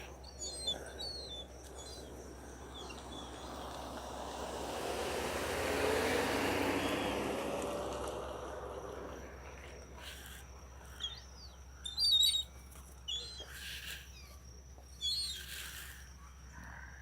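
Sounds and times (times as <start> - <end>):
birds chirping: 0.0 - 7.4, 8.9 - 16.8
vehicle passing by: 2.0 - 10.4.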